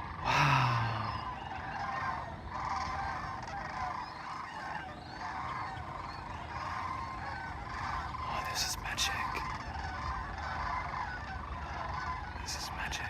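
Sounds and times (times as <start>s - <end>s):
flock of waterfowl calling: 0.0s - 13.0s.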